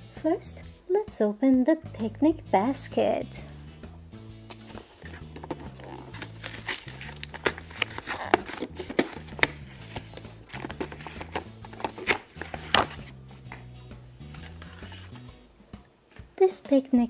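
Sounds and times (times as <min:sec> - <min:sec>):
soft background music: 0:00.0 - 0:17.0
toy packaging crinkling: 0:04.7 - 0:13.1.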